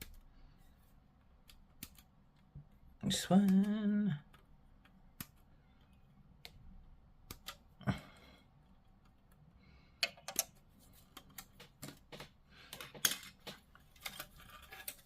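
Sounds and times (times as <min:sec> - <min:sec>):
plastic parts clicking: 0:10.0 - 0:11.6.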